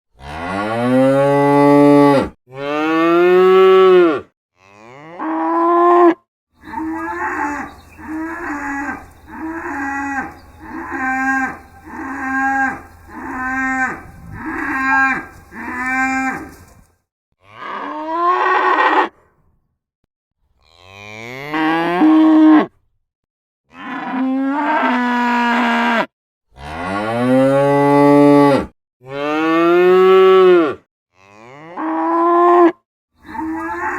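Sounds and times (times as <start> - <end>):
cattle mooing: 2.0 - 16.8, 28.4 - 33.9.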